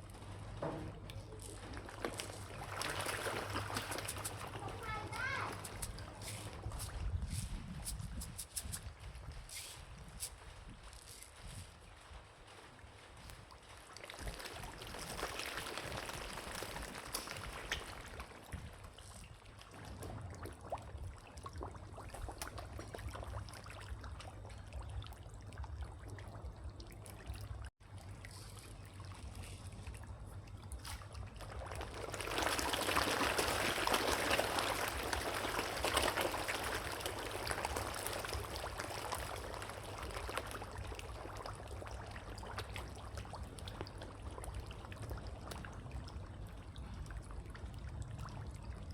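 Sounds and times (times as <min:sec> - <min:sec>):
water trickling and splashing: 0:00.0 - 0:48.9.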